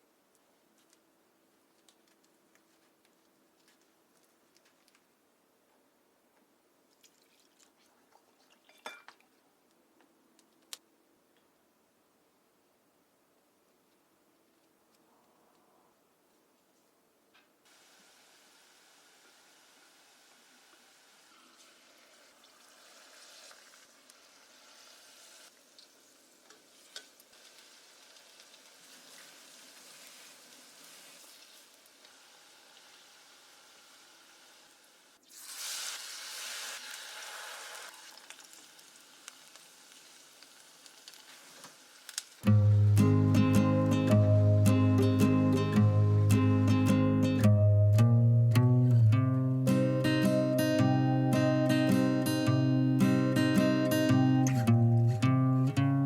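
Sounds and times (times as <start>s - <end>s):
food sizzling in hot oil: 17.7s - 42.5s.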